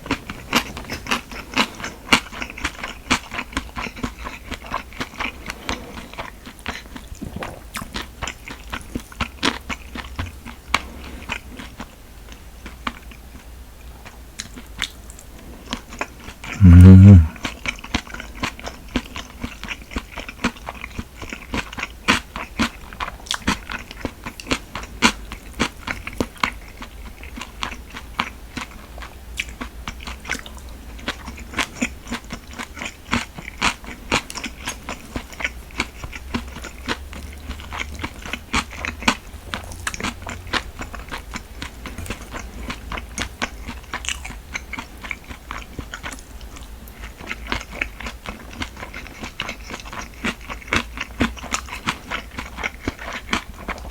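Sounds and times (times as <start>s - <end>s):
person chewing food: 14.0s - 17.4s, 19.0s - 53.9s
faint low hum: 16.6s - 17.4s
wet mouth clicks: 16.6s - 17.4s.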